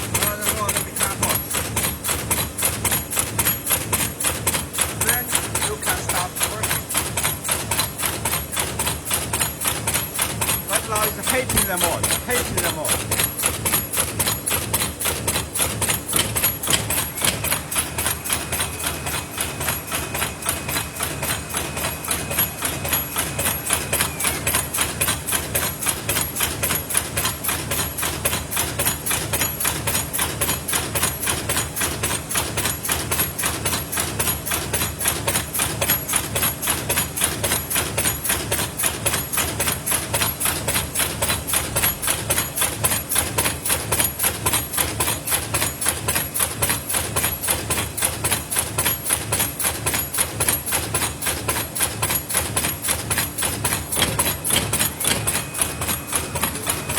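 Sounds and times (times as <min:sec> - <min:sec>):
machine mechanical clatter: 0:00.0 - 0:56.9.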